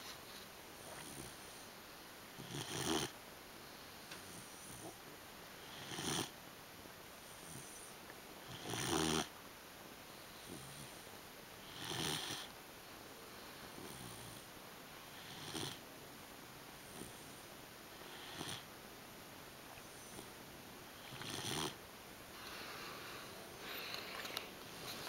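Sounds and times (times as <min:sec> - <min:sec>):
puppy snoring: 0:00.8 - 0:01.7, 0:02.3 - 0:03.2, 0:04.2 - 0:05.0, 0:05.6 - 0:06.4, 0:07.2 - 0:09.3, 0:10.3 - 0:12.5, 0:13.7 - 0:15.8, 0:16.8 - 0:18.7, 0:19.8 - 0:20.4, 0:21.0 - 0:21.8
soft breaths: 0:03.5 - 0:05.9, 0:07.1 - 0:08.7, 0:10.0 - 0:15.9, 0:16.7 - 0:18.7, 0:19.6 - 0:25.0.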